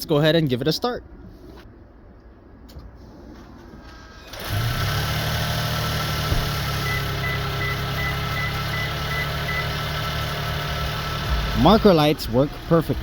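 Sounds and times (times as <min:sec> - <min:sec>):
car engine starting and idling: 0:02.7 - 0:13.0.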